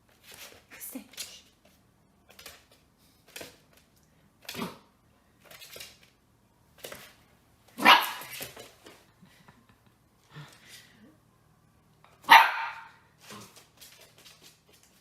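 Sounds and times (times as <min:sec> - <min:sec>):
dog barking: 0:07.8 - 0:08.3, 0:12.2 - 0:13.0.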